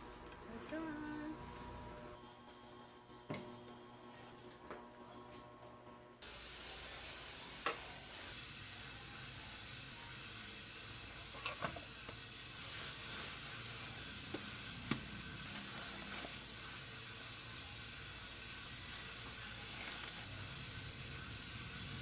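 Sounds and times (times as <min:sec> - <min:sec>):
food sizzling in a frying pan: 0:06.2 - 0:22.0.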